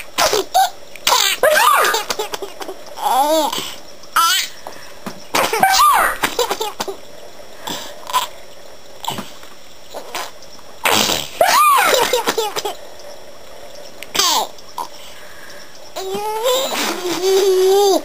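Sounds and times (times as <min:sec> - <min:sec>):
baby squealing laugh: 0:00.3 - 0:03.5, 0:05.4 - 0:06.7, 0:11.4 - 0:12.5.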